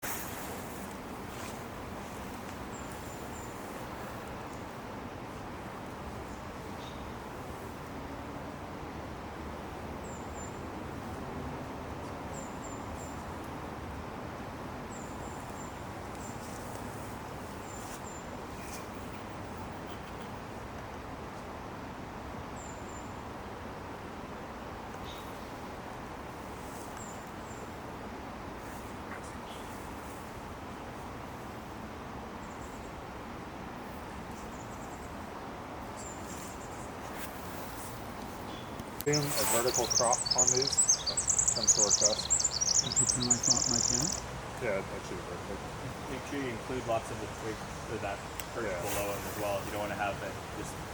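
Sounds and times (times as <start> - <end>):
steady background noise: 0.0 - 50.9
small songbirds calling: 1.4 - 7.8, 9.5 - 11.1, 12.0 - 20.7, 22.4 - 23.3, 24.9 - 25.7, 26.7 - 27.8, 32.4 - 33.0, 34.3 - 50.9
songbird high thin calls: 38.4 - 44.4.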